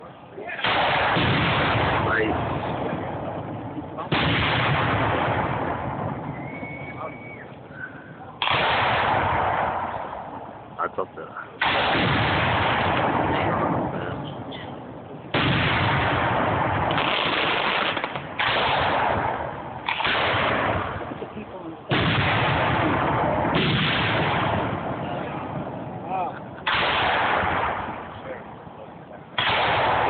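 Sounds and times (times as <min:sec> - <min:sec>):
fireworks bursting with booms: 0:00.6 - 0:07.2, 0:08.4 - 0:10.4, 0:11.6 - 0:14.4, 0:15.2 - 0:26.0, 0:26.6 - 0:28.4.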